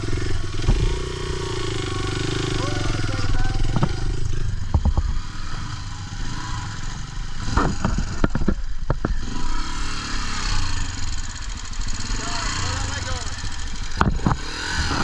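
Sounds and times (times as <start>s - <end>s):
dirt bike engine running: 0.0s - 15.0s
knocks and clatter: 3.6s - 5.6s, 7.4s - 9.2s, 14.0s - 15.0s.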